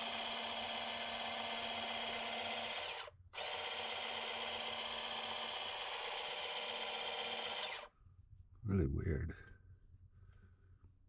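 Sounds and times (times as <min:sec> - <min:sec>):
pump motor whining: 0:00.0 - 0:07.9.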